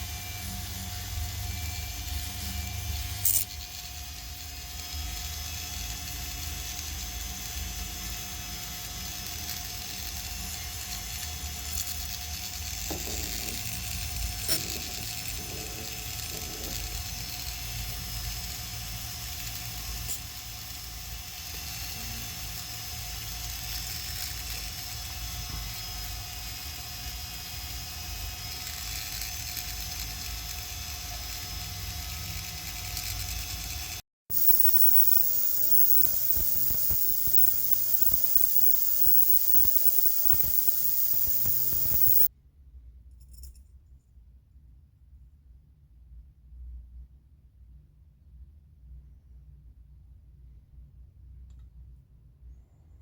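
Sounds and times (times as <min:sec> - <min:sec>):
steady machine hum: 0:34.3 - 0:42.3.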